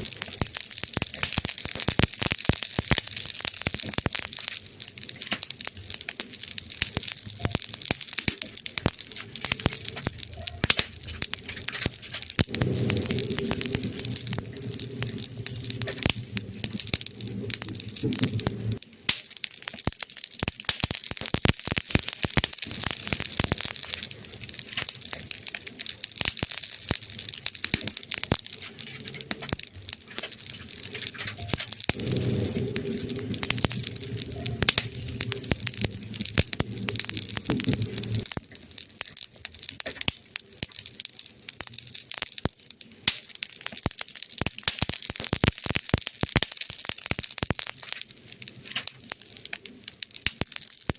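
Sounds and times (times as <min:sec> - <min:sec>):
wood fire crackling: 0:00.0 - 0:50.9
low hum: 0:11.0 - 0:18.8, 0:30.6 - 0:38.3.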